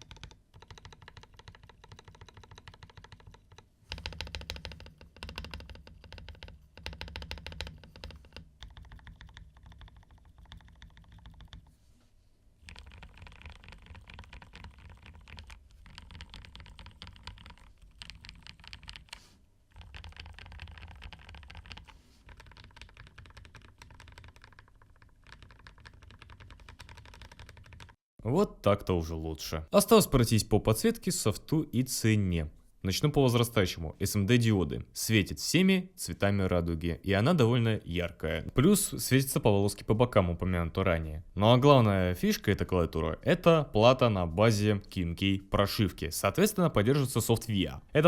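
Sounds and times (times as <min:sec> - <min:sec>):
mechanical keyboard typing: 0:00.0 - 0:11.7, 0:12.6 - 0:28.0.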